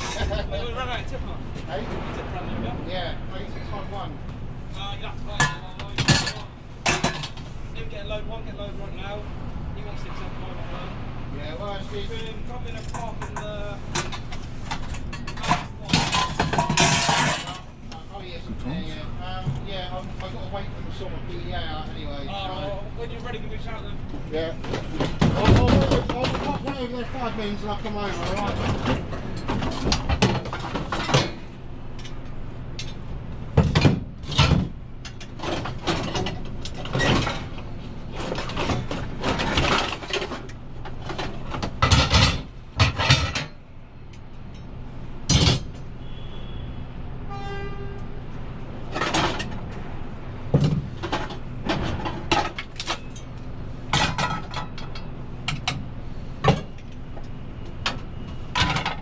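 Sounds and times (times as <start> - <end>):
scrap metal clanking and banging: 0.0 - 2.8, 5.2 - 7.8, 11.4 - 18.2, 24.4 - 32.2, 33.6 - 43.7, 44.5 - 46.2, 48.8 - 49.8, 50.5 - 55.8, 57.9 - 59.0
engine-like hum: 0.0 - 59.0
brief tone: 46.0 - 48.0, 57.6 - 58.5.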